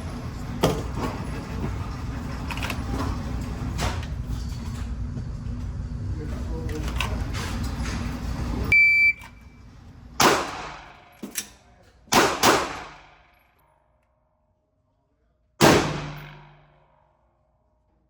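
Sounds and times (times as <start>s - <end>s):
shot timer beep: 8.7s - 9.4s
pistol shots with echoes: 10.2s - 11.0s, 12.1s - 13.2s, 15.6s - 16.8s.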